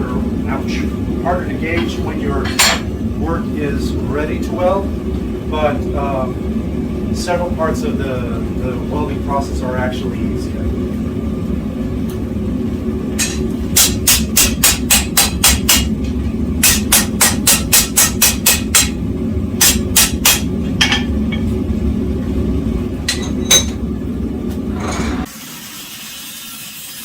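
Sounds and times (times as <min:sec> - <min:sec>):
forge burner roaring: 0:00.0 - 0:27.0
hammer striking steel on anvil: 0:01.8 - 0:02.9, 0:13.2 - 0:16.0, 0:16.6 - 0:19.0, 0:19.6 - 0:21.5, 0:23.1 - 0:23.8.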